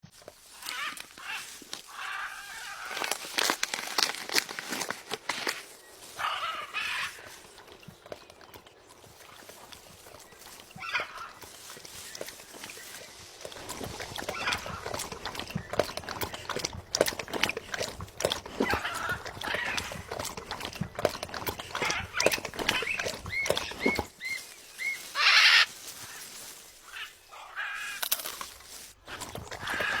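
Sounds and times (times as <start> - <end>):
parrot screeching: 0.6 - 3.0, 24.8 - 25.7
parrot squawking: 22.8 - 25.7.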